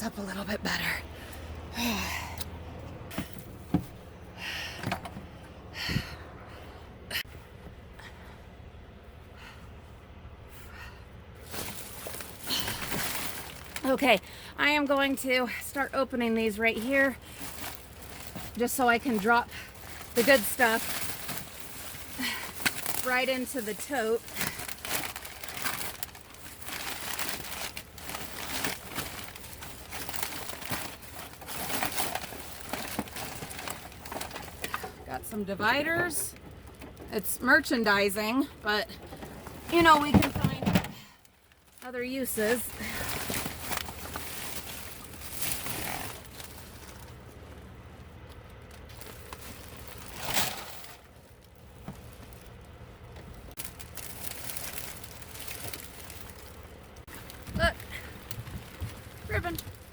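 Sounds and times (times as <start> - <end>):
plastic bag crinkling: 11.4 - 15.1, 16.0 - 35.0, 41.4 - 47.4, 48.6 - 59.9.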